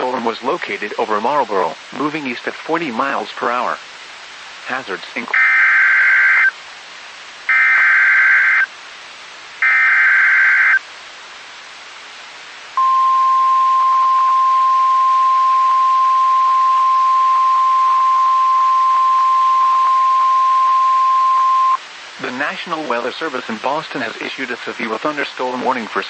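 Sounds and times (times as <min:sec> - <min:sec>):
screeching digital data tones: 0:05.4 - 0:06.5, 0:07.5 - 0:08.7, 0:09.6 - 0:10.8
steady warning alarm tone: 0:07.5 - 0:08.7, 0:09.6 - 0:10.8.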